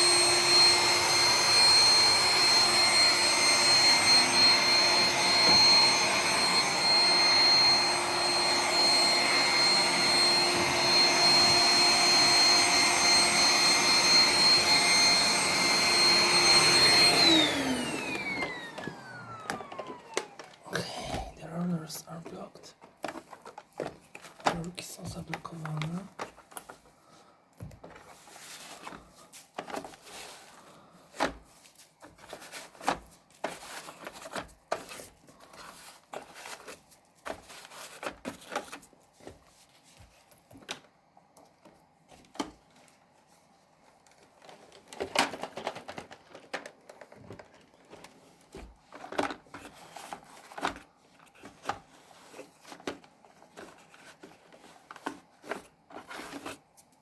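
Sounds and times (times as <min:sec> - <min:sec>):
robot vacuum sweeping: 0:00.0 - 0:21.4.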